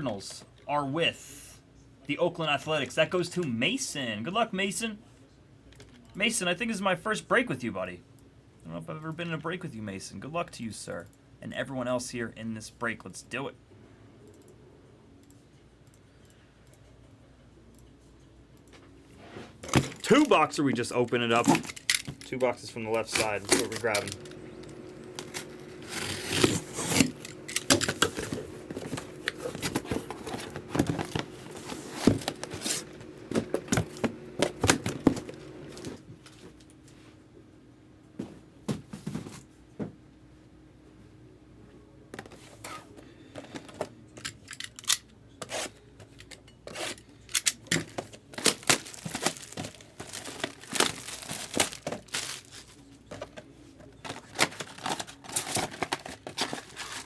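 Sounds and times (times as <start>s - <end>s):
plastic wrapping tearing and crinkling: 21.4s - 35.8s, 47.8s - 52.8s, 54.1s - 57.0s
cardboard being handled: 23.0s - 36.0s.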